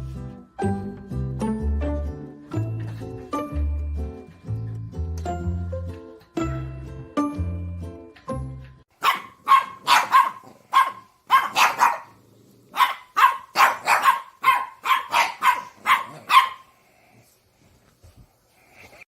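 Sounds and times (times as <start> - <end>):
dog barking: 9.0 - 16.7.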